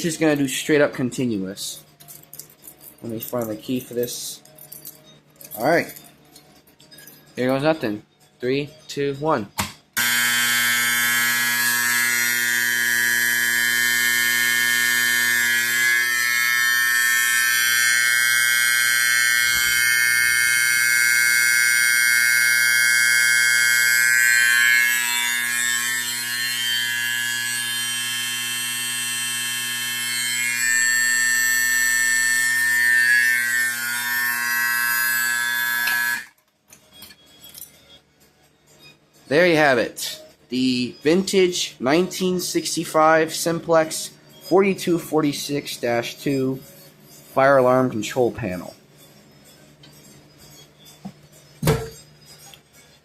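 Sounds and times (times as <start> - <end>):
fire alarm horn buzzing: 10.0 - 36.4.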